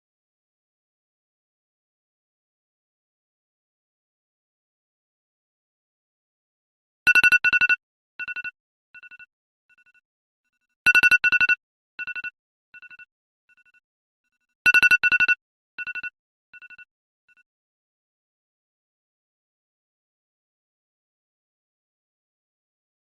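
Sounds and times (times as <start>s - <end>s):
phone alarm beeps: 7.1s - 10.0s, 10.9s - 13.8s, 14.7s - 17.4s.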